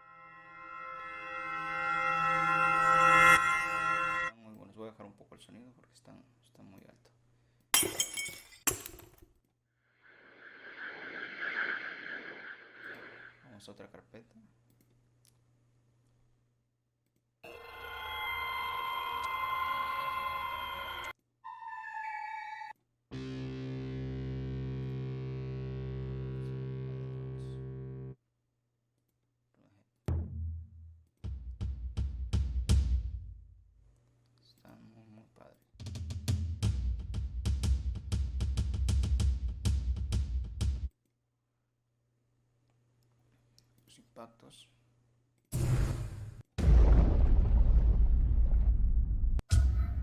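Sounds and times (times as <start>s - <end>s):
cinematic hit with low boom: 45.6s - 49.4s.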